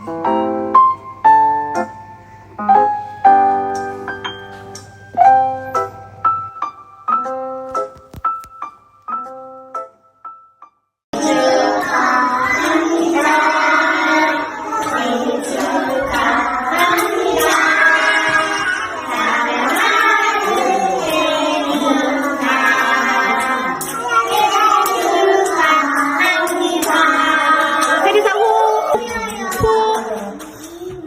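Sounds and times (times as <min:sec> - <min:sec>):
group singing a celebration song: 0:11.2 - 0:30.4.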